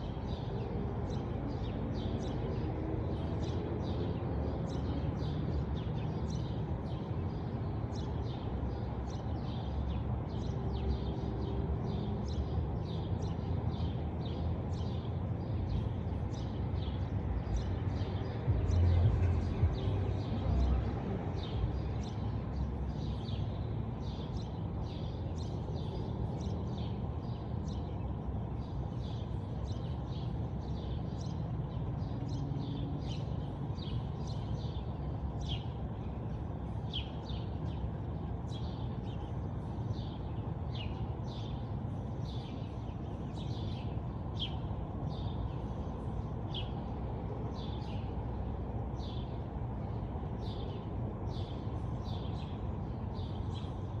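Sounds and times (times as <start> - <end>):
small birds chirping: 21.4 - 54.0.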